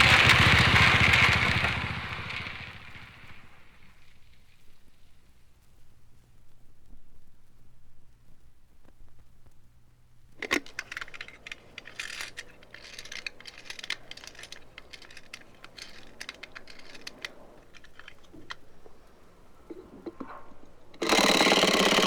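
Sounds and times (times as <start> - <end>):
light metallic clicks and jingles: 10.4 - 22.0.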